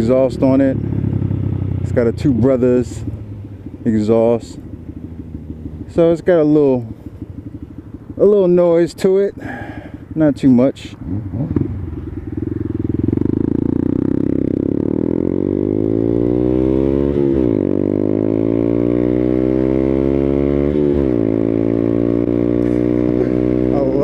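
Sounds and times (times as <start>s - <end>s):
motorcycle engine accelerating: 0.0s - 24.0s.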